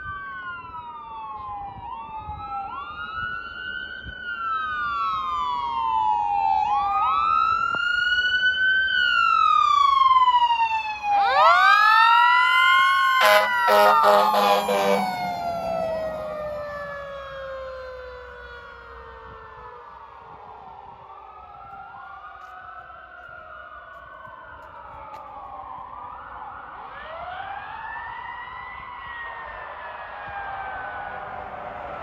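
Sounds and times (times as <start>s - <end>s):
fire engine sirens wailing: 0.0s - 32.0s
air horn blast: 12.9s - 17.0s.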